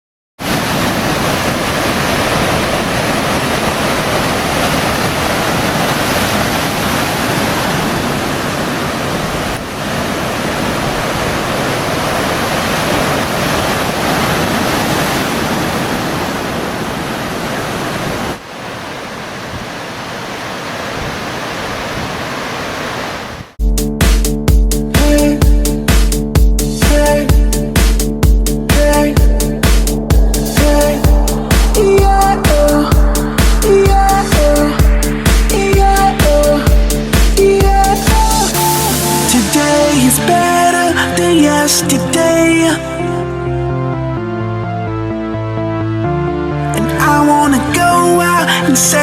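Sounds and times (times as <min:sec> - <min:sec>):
loud rushing noise: 0:28.6 - 0:40.5.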